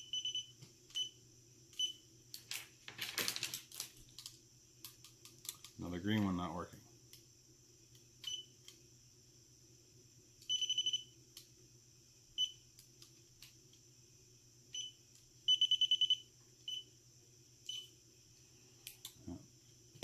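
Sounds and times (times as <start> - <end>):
light tester beeping: 0.0 - 2.0, 8.2 - 8.7, 10.4 - 11.2, 14.7 - 16.9, 17.6 - 18.0.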